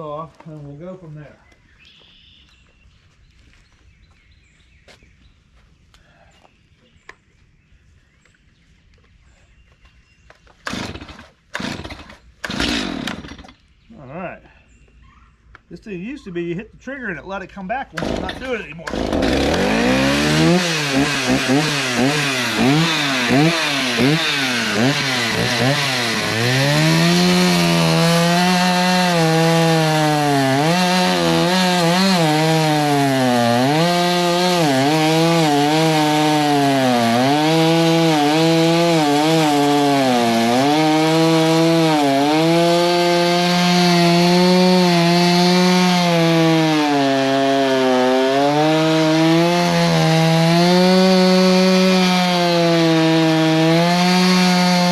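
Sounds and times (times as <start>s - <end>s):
chainsaw cutting log: 10.6s - 13.6s, 17.9s - 54.9s
chainsaw revving: 10.6s - 13.6s, 18.0s - 54.9s.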